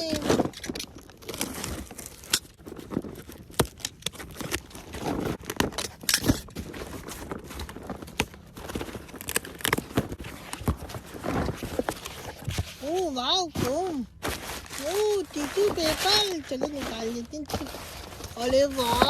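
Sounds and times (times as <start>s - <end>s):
cardboard and paper rustling: 0.0s - 19.0s.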